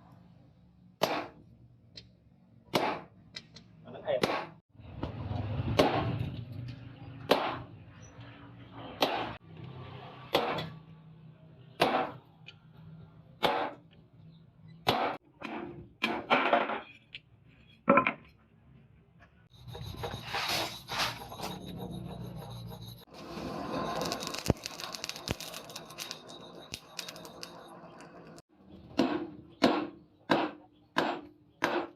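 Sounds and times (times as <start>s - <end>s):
steady scraping: 19.5s - 28.5s.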